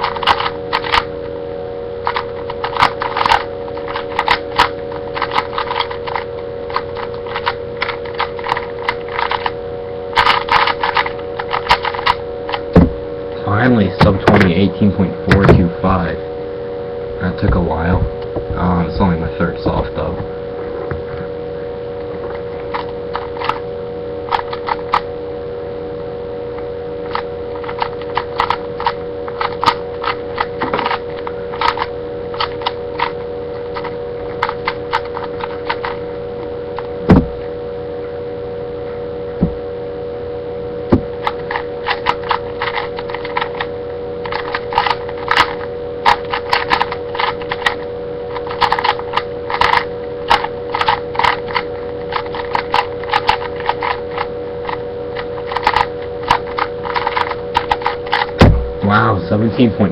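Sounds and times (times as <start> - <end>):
plastic cube clicks and clacks: 0.0 - 1.0, 2.1 - 9.5, 10.2 - 12.2, 27.1 - 33.2, 33.8 - 36.0, 41.2 - 47.8, 48.4 - 54.3, 55.5 - 58.4
electrical hum: 0.0 - 59.9
loud thump: 12.8 - 13.0, 37.1 - 37.4, 39.4 - 39.6, 58.4 - 58.8.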